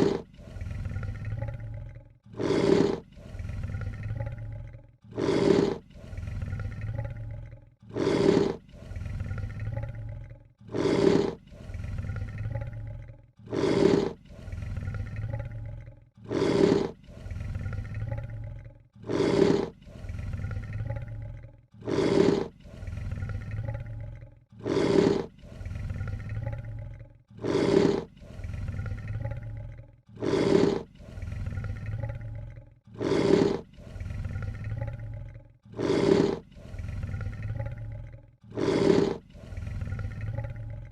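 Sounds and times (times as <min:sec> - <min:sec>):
lion hiss-snarl: 0:00.0 - 0:01.5, 0:02.3 - 0:04.2, 0:05.1 - 0:07.0, 0:07.9 - 0:09.8, 0:10.7 - 0:12.6, 0:13.4 - 0:15.4, 0:16.2 - 0:18.4, 0:19.0 - 0:21.0, 0:21.8 - 0:24.0, 0:24.6 - 0:26.6, 0:27.4 - 0:29.5, 0:30.2 - 0:32.1, 0:32.9 - 0:34.9, 0:35.7 - 0:37.8, 0:38.5 - 0:40.4.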